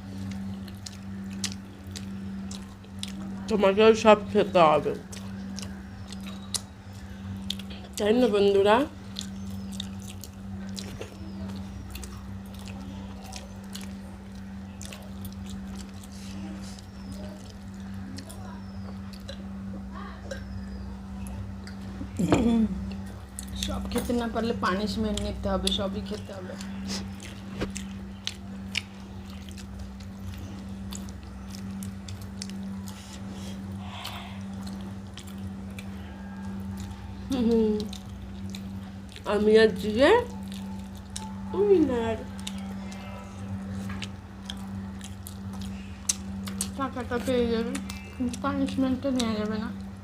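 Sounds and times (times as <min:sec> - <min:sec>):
chewing food: 0:00.0 - 0:50.0
low electrical hum: 0:00.0 - 0:50.0
mouth smacking: 0:26.6 - 0:35.9.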